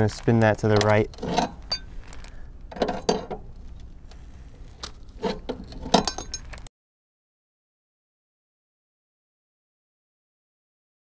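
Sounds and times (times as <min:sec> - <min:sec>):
car jack metal clinks and knocks: 0:00.7 - 0:03.5, 0:05.1 - 0:06.7.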